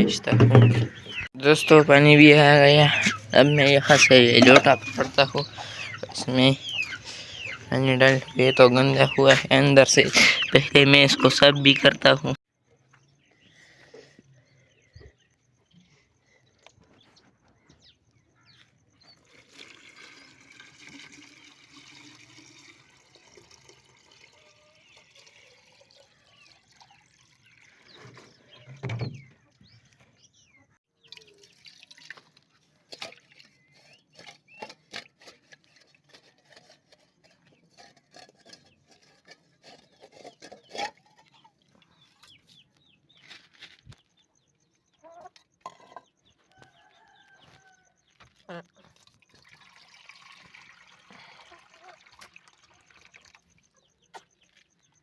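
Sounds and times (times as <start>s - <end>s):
water pouring and splashing: 19.2s - 28.6s, 31.0s - 33.6s, 48.9s - 53.8s.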